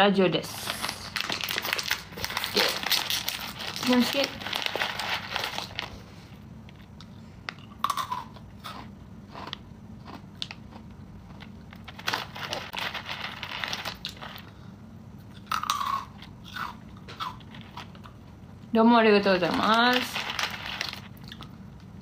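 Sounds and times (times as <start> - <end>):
person chewing crunchy snack: 0.9 - 5.9, 6.7 - 14.6, 15.3 - 18.2, 20.2 - 21.6.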